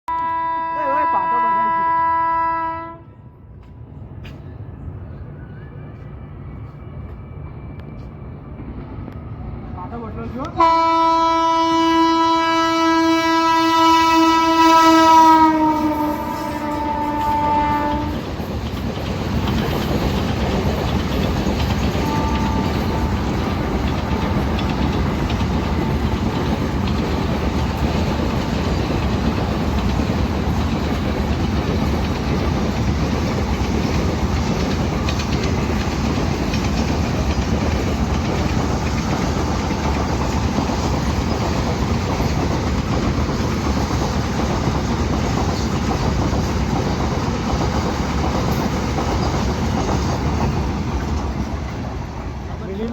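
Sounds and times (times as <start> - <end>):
freight train rumbling: 0.1 - 52.9
wheels clacking over rail joints: 16.4 - 52.9.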